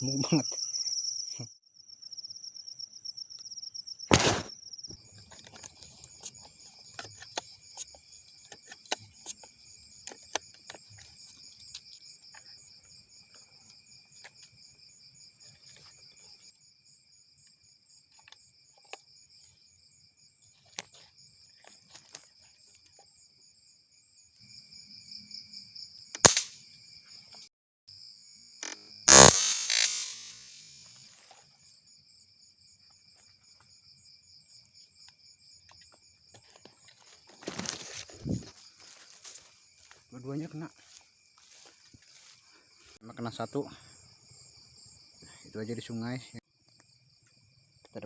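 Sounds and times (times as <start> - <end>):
crickets chirring: 0.0 - 48.0
sharp cracks: 4.1 - 4.5, 26.2 - 26.6, 28.6 - 30.8.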